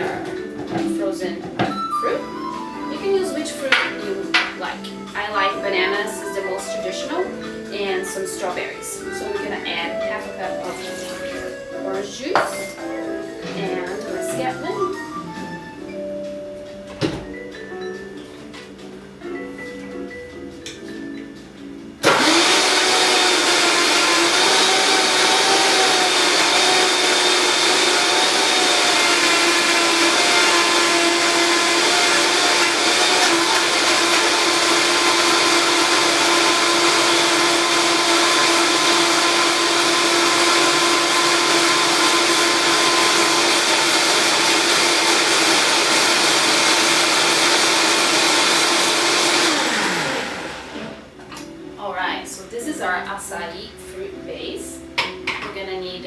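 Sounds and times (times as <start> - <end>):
blender running at high speed: 10.7 - 11.6, 22.0 - 51.0.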